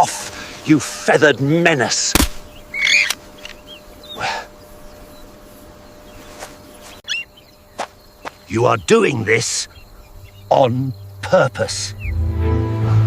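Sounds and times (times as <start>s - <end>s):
short animal calls: 2.6s - 4.6s.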